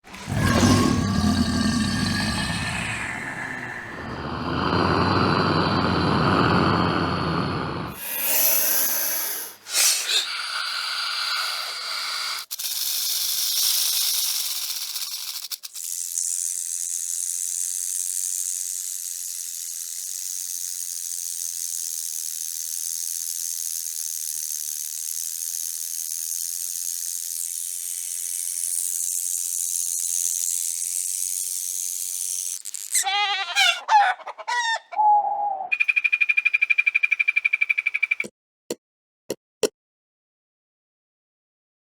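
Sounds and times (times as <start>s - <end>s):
reptile hissing: 0.1s - 15.5s, 31.2s - 35.8s.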